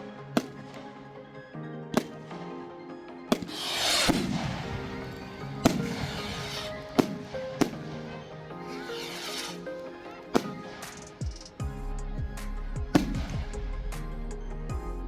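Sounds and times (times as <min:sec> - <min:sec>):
music playing: 0:00.0 - 0:15.0
fireworks bangs: 0:03.3 - 0:11.2
fireworks crackling fizz: 0:03.4 - 0:11.2.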